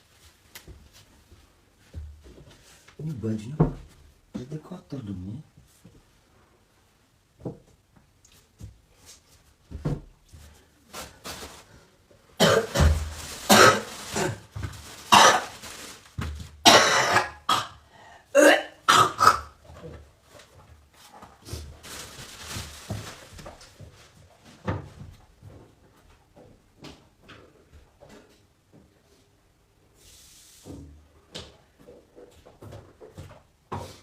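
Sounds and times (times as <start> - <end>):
person coughing harshly: 12.4 - 14.5, 15.1 - 15.5, 16.6 - 19.6.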